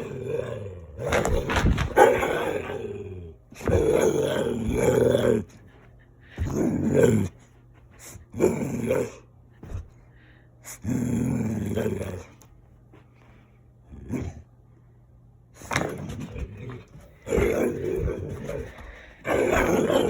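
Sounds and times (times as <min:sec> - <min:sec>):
dog growly grumbles: 0:00.0 - 0:05.6, 0:06.3 - 0:07.4, 0:08.3 - 0:09.3, 0:10.6 - 0:12.4, 0:13.8 - 0:14.5, 0:15.6 - 0:20.0.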